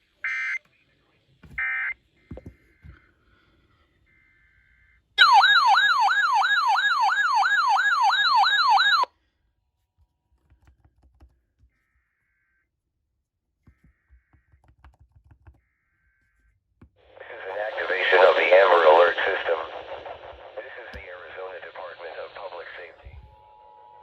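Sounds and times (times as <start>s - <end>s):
electronic siren tone: 5.2s - 9.1s.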